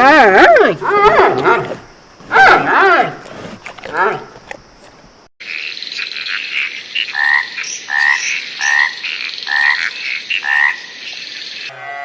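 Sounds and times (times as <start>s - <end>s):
frog croaking: 5.4s - 12.0s
high-pitched frog or insect chorus: 5.4s - 12.0s.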